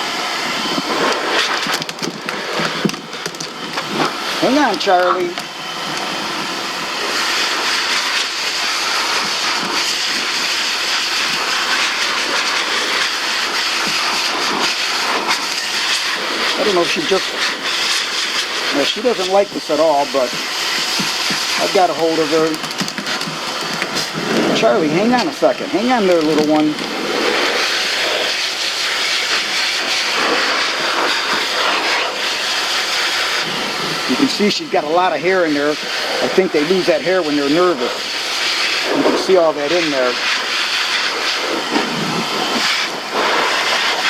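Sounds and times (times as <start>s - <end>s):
pet dryer blowing air: 0.0s - 44.0s.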